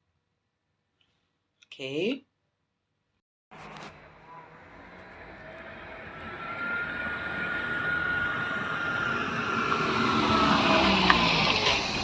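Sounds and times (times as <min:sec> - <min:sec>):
vehicle passing: 0:03.5 - 0:12.0.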